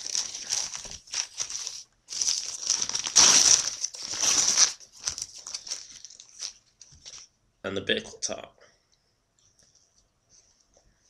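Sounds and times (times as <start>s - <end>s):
plastic packaging crinkling: 0.0s - 7.3s.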